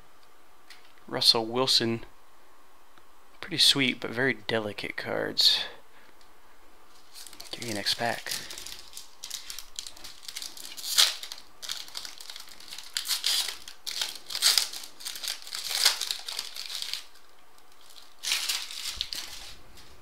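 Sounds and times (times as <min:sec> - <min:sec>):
foil pack tearing and crinkling: 0:07.0 - 0:19.9.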